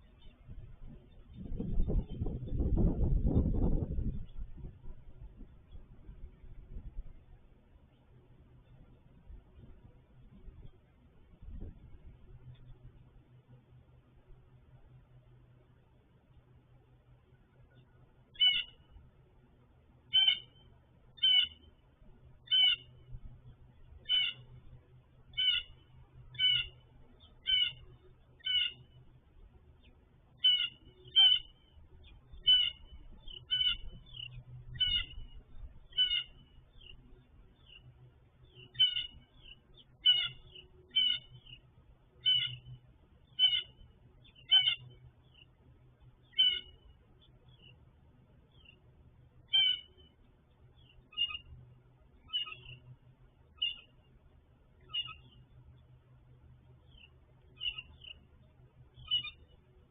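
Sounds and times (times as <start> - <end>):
animal high call: 22.5 - 22.9, 27.4 - 27.8, 30.4 - 31.6, 32.4 - 35.2, 35.9 - 36.4, 38.7 - 39.2, 40.0 - 41.4, 42.2 - 42.6, 43.4 - 43.8, 44.4 - 45.0, 46.3 - 46.8, 49.5 - 50.0, 52.3 - 52.8.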